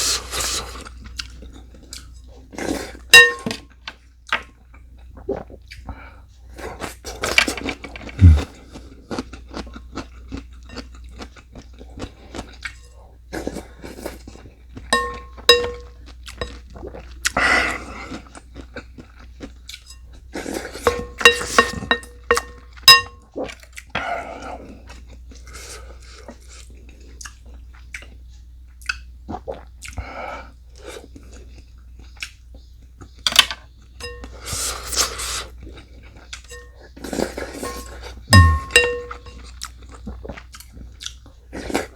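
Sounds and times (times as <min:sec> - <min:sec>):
chewing and crunching food: 0:00.0 - 0:41.9
utensils clinking against dish: 0:03.2 - 0:03.7, 0:15.0 - 0:16.6, 0:20.8 - 0:23.2, 0:33.3 - 0:35.2, 0:36.4 - 0:36.8, 0:37.5 - 0:39.4.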